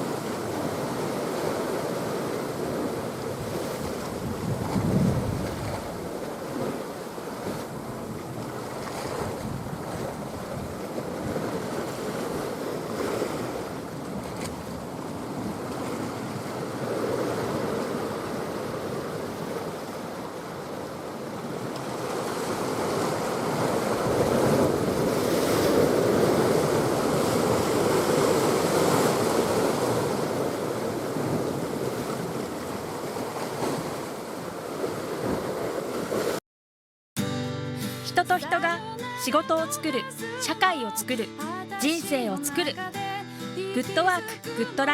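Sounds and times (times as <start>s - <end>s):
sea waves washing: 0.0s - 20.6s, 21.9s - 36.4s
wind buffeting microphone: 3.4s - 6.2s.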